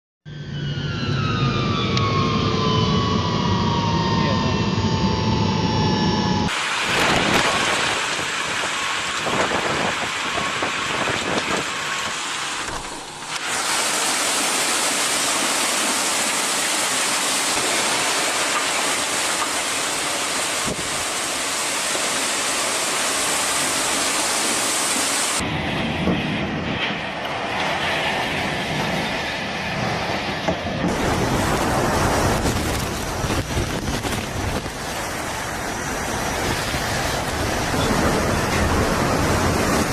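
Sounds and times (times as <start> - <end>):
hurricane wind: 0.8 - 39.9
heavy rain: 6.5 - 25.4, 30.9 - 39.9.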